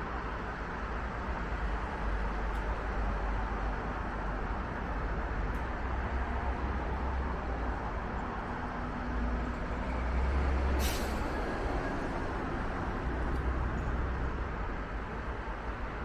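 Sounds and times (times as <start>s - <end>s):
road traffic rumble: 0.1s - 16.0s
short sharp hiss: 10.8s - 11.2s.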